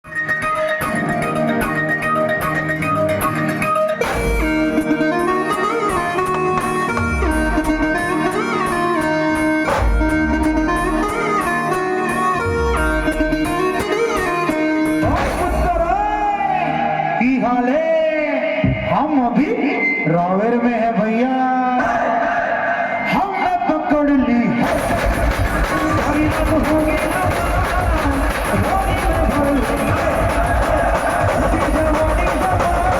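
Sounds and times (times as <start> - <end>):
brass band playing: 24.6 - 32.9.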